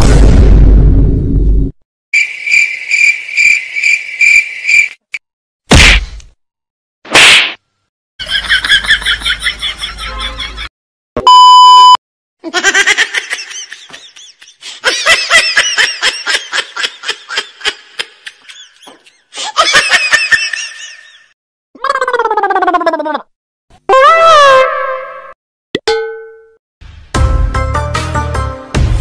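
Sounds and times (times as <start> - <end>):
high-pitched laughter: 8.2 - 10.7, 12.4 - 23.3
censor bleep: 11.2 - 12.0.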